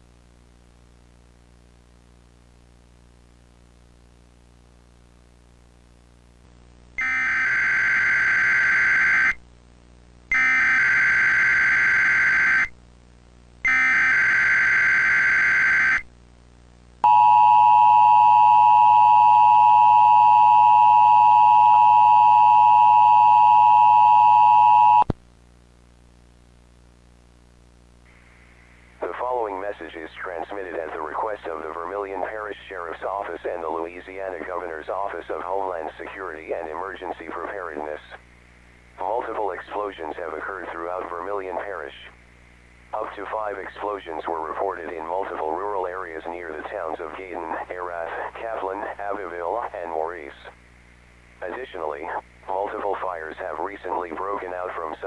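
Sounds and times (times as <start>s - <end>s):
two-tone attention signal: 17.0s - 25.0s.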